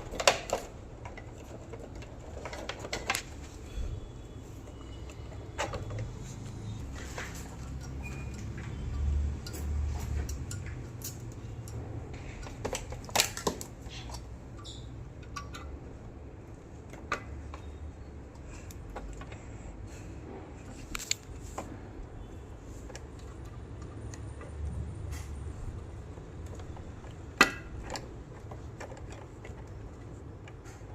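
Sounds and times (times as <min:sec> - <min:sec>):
small parts and tools clicking: 0:00.0 - 0:30.9.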